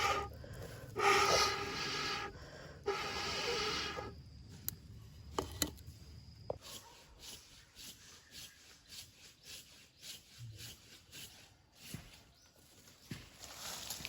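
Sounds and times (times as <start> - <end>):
quick scraping strokes: 0.0 - 0.3, 1.0 - 4.1.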